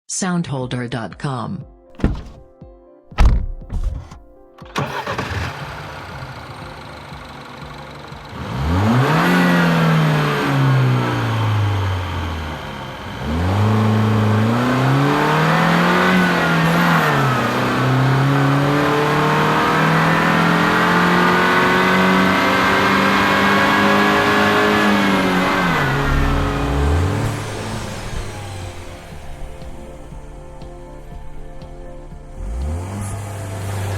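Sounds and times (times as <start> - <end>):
clicks and a thunk: 2.0 - 2.5, 3.1 - 4.3
car engine accelerating: 3.1 - 33.9.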